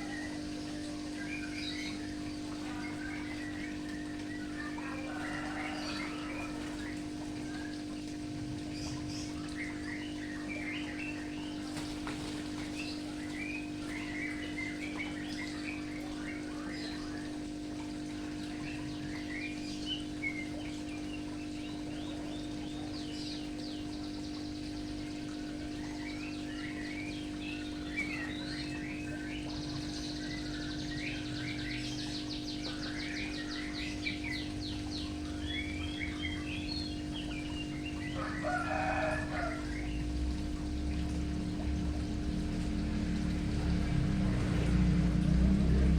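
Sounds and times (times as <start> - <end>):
small birds chirping: 0.0 - 45.9
steady low hum: 0.0 - 45.9
rooster crowing: 4.8 - 7.0, 38.0 - 40.0.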